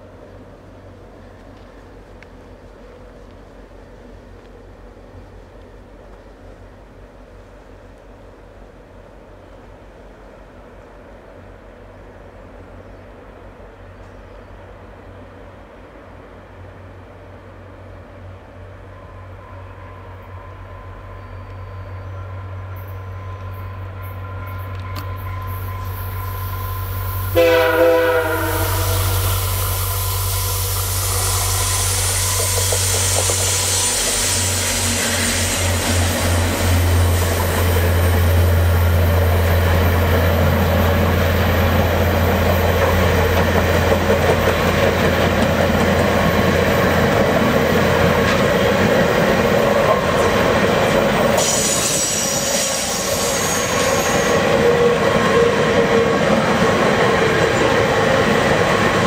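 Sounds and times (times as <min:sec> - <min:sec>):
diesel locomotive engines passing: 0:00.0 - 0:59.0
train horn blast: 0:19.0 - 0:34.6
high wheel squeal: 0:28.4 - 0:36.3, 0:51.4 - 0:55.7
passenger cars rolling by: 0:30.4 - 0:59.0.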